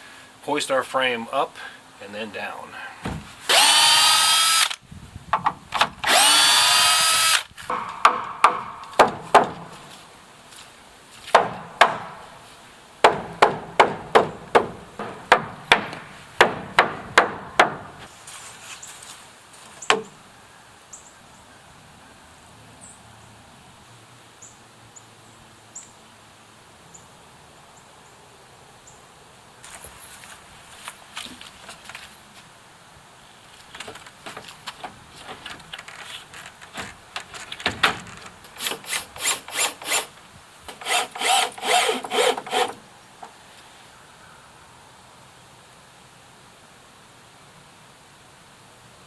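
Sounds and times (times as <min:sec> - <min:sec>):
cordless drill spinning: 0:03.5 - 0:04.8, 0:06.0 - 0:07.6, 0:38.6 - 0:40.1, 0:40.7 - 0:42.8
hammer striking wood: 0:07.7 - 0:09.9, 0:11.3 - 0:12.3, 0:13.0 - 0:18.1, 0:19.9 - 0:20.1.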